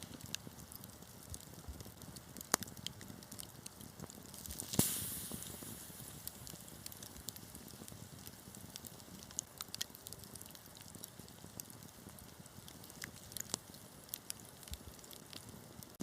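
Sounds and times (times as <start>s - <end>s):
fire pops: 0.0s - 16.0s
wood fire crackling: 0.0s - 16.0s
brief hiss from fire: 4.4s - 8.6s.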